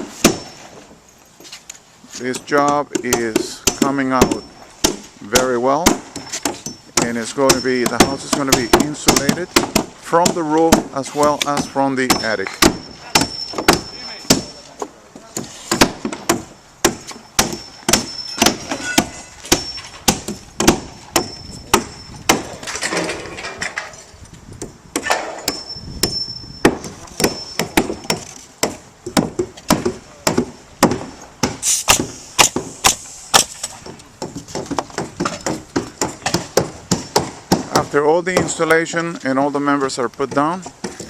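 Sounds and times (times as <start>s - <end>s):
hammer driving nails into wood: 15.3s - 23.8s, 24.6s - 38.7s.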